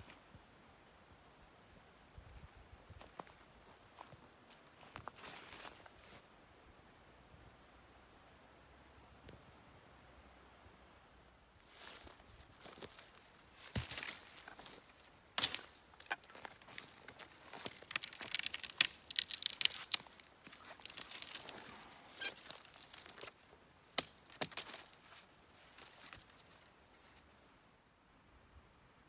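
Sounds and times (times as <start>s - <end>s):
crinkling and crackling: 11.6s - 27.2s.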